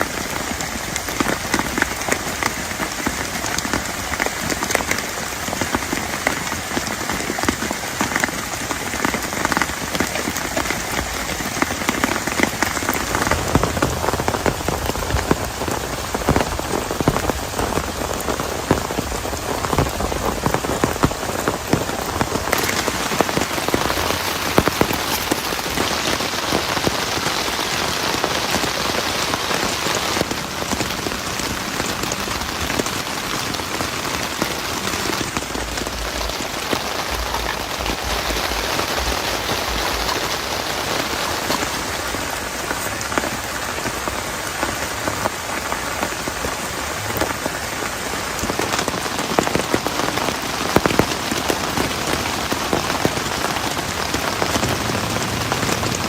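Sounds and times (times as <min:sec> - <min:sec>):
heavy rain on a surface: 0:00.0 - 0:56.0.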